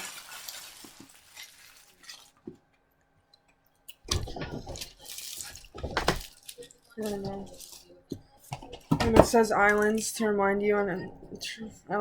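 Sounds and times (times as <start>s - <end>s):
food packaging rustling: 0.0s - 2.6s, 4.1s - 9.0s.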